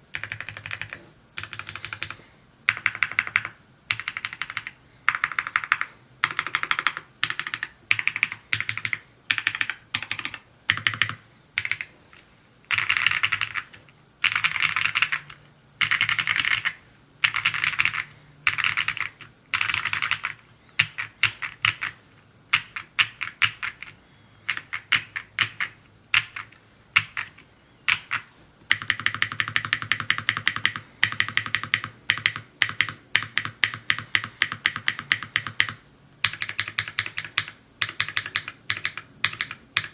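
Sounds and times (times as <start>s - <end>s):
mechanical keyboard typing: 0.1s - 11.9s, 12.7s - 39.9s.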